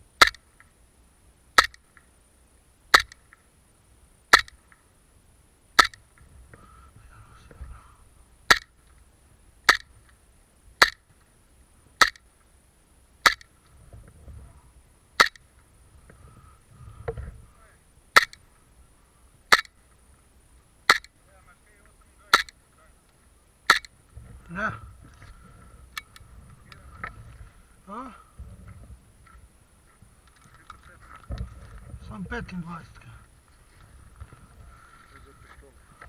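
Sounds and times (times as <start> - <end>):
airsoft gun firing single shots: 0.2 - 0.7, 1.6 - 2.0, 2.9 - 3.4, 4.3 - 4.6, 5.8 - 6.0, 8.5 - 8.8, 9.7 - 10.0, 10.8 - 11.1, 12.0 - 12.3, 13.2 - 13.5, 15.2 - 15.5, 18.2 - 18.4, 19.5 - 19.8, 20.9 - 21.1, 22.3 - 22.6, 23.7 - 24.0.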